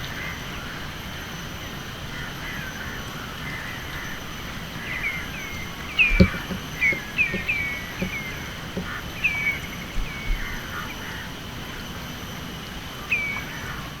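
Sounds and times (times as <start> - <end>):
faint low knocks: 5.6 - 10.8.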